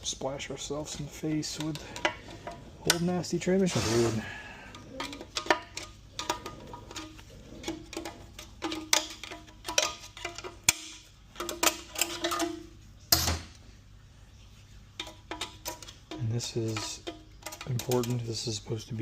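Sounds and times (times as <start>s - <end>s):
metal parts clinking: 4.7s - 13.5s, 15.0s - 18.6s.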